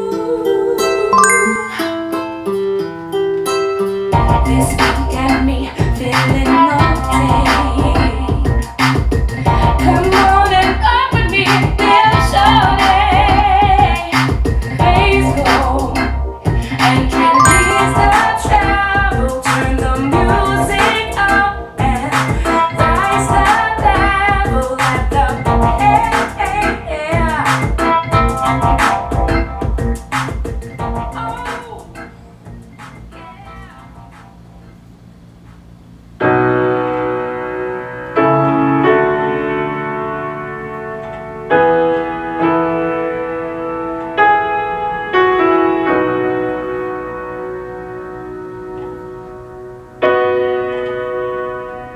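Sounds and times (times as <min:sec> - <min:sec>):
piano chords over loudspeakers: 0:00.0 - 0:34.8, 0:36.2 - 0:51.9
pop song over car speakers: 0:04.1 - 0:29.9.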